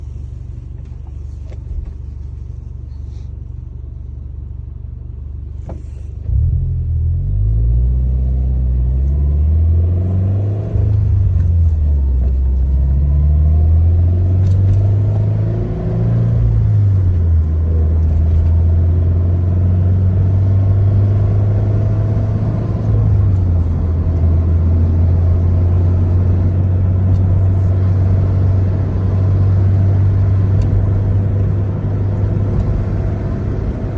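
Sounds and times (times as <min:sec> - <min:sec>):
car engine drone from inside cabin: 0:00.0 - 0:33.9.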